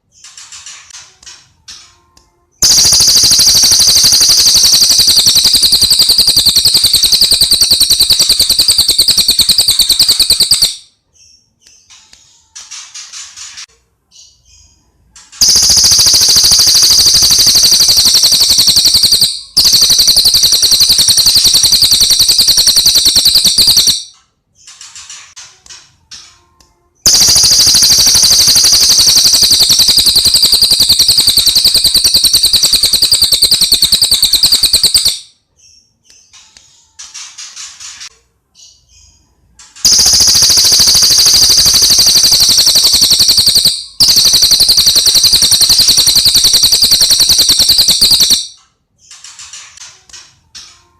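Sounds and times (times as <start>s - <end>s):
bird chirps: 2.6s - 12.0s, 14.1s - 24.1s, 27.1s - 36.2s, 38.6s - 48.6s.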